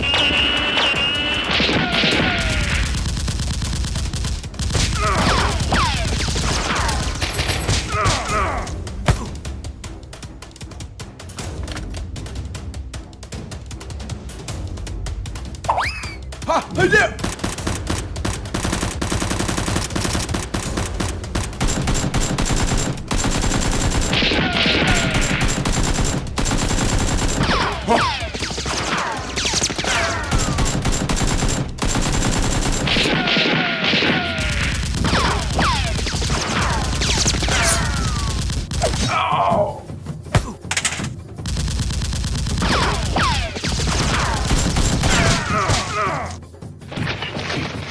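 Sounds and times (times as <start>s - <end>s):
rapid gunfire: 0.0s - 8.0s, 17.2s - 39.1s, 40.7s - 45.9s.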